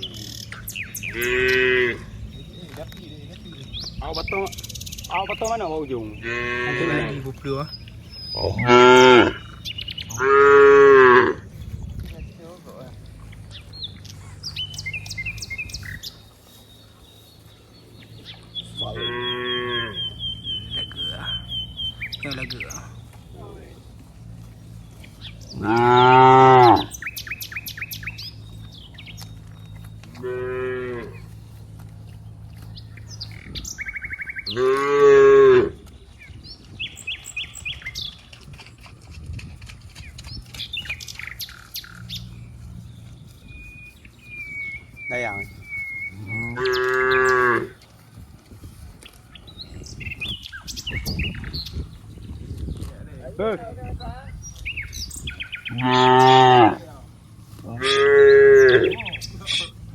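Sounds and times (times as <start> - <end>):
small bird chirping: 0.0 - 10.6, 11.4 - 59.9
low background rumble: 0.0 - 19.1, 19.8 - 30.3, 30.9 - 34.6, 35.5 - 59.9
cow mooing: 0.9 - 2.4, 5.2 - 7.7, 8.3 - 11.6, 18.8 - 23.6, 25.5 - 27.1, 30.0 - 31.4, 34.4 - 35.8, 45.9 - 47.8, 55.6 - 59.9.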